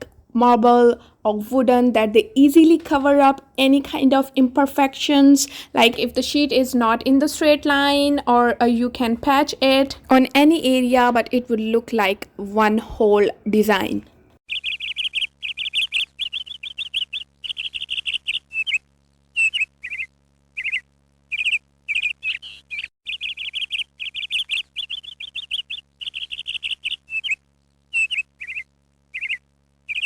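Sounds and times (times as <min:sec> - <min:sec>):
faint steady hum: 0:00.0 - 0:14.4
small bird chirping: 0:14.5 - 0:30.0.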